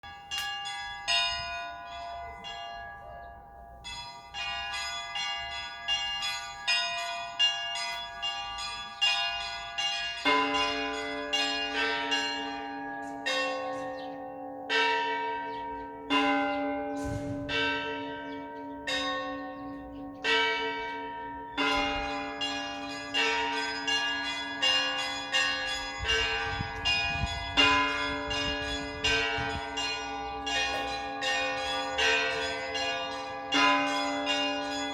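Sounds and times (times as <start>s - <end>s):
small high church bells: 0.0s - 34.9s
deep bell strikes: 14.7s - 17.9s.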